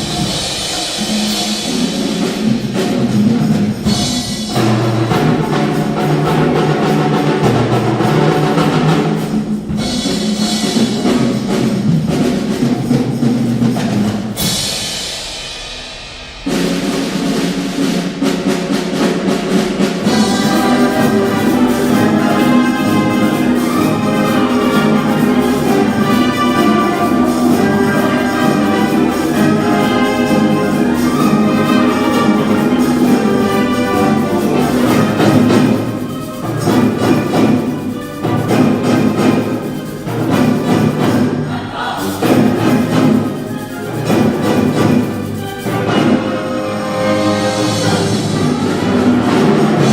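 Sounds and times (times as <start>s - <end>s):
wind band playing: 0.0s - 15.6s, 16.5s - 49.9s
timpani: 0.0s - 49.9s
cymbal crash: 14.4s - 18.2s.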